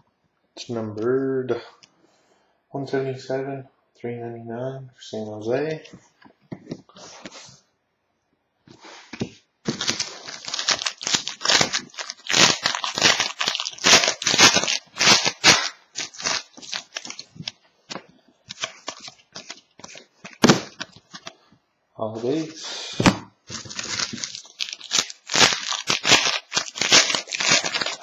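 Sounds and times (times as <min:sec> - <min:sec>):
wrapper sharp crack: 0:09.7 - 0:17.6, 0:18.5 - 0:21.3, 0:23.5 - 0:28.0
wrapper tearing and crinkling: 0:09.7 - 0:17.6, 0:18.5 - 0:21.3, 0:23.5 - 0:28.0.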